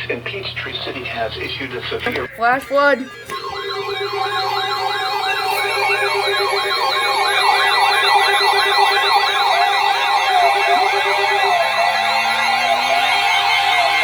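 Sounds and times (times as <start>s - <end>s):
warbling emergency alert tone: 2.1s - 14.0s.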